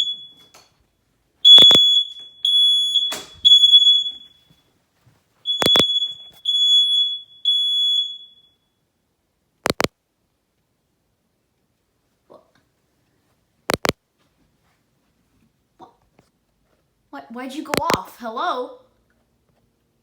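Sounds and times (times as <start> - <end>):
smoke detector beeping: 0.0 - 0.7, 1.4 - 4.5, 5.5 - 8.6
sharp clicks: 5.5 - 5.9, 9.6 - 9.9, 13.7 - 14.0, 17.7 - 18.0.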